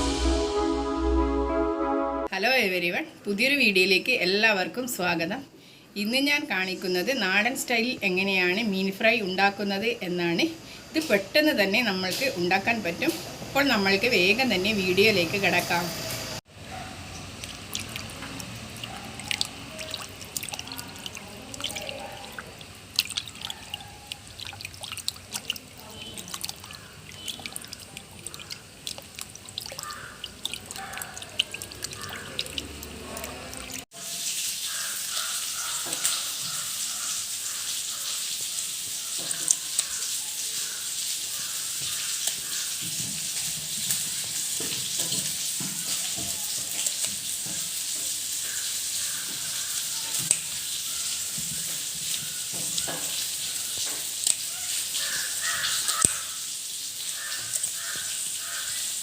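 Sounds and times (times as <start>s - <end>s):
tap water trickling into sink: 17.1s - 33.8s, 34.7s - 37.2s, 37.9s - 40.1s, 41.4s - 58.9s.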